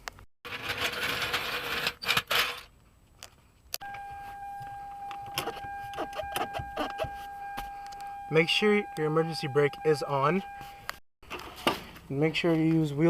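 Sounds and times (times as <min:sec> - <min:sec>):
steady high tone: 0:03.8 - 0:11.0.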